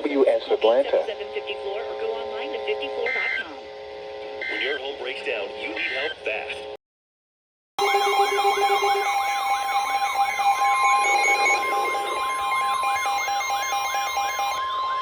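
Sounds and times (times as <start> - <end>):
steady high alarm tones: 7.8 - 15.0
sweeping siren-like wail: 7.8 - 15.0.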